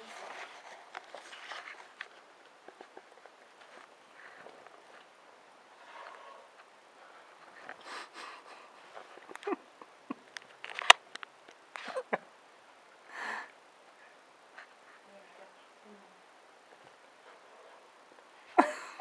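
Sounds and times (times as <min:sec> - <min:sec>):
kittens scuffling: 0:00.0 - 0:12.2.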